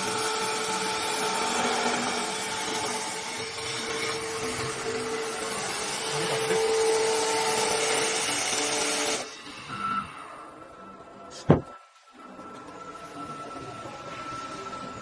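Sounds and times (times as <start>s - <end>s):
wood lathe cutting hiss: 0.0s - 10.6s.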